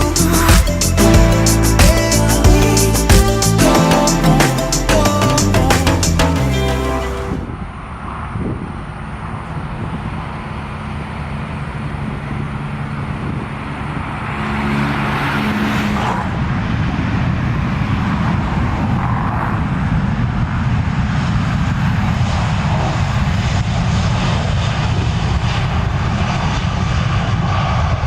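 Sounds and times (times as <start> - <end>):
jet engines running: 16.3 - 28.0.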